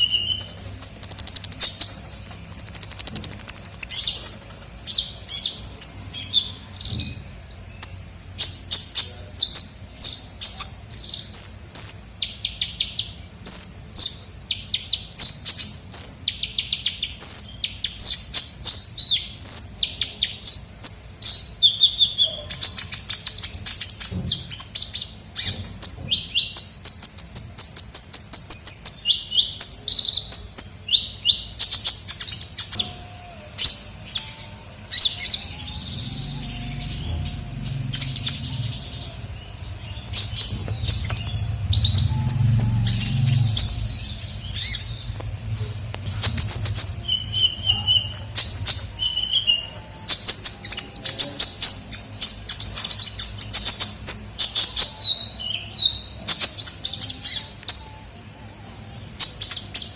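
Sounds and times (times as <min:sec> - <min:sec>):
sunbird chirps and twitters: 0:00.0 - 0:58.2
low rumble: 0:35.8 - 0:47.7.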